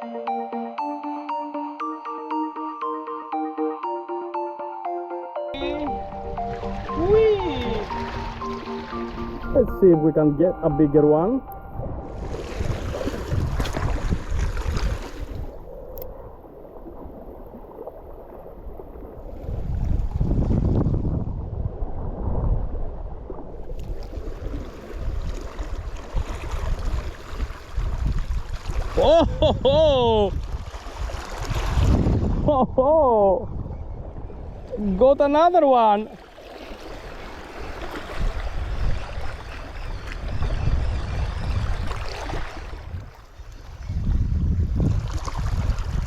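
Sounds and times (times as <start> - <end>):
sea water washing: 5.6 - 11.2, 11.9 - 20.7, 21.7 - 32.4, 34.2 - 40.4
wind buffeting microphone: 11.5 - 35.2, 37.0 - 46.0.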